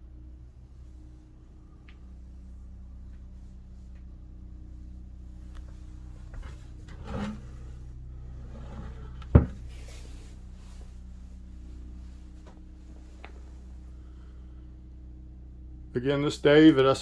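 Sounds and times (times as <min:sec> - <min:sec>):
low hum: 0:00.0 - 0:17.0
soft bump: 0:08.5 - 0:09.9.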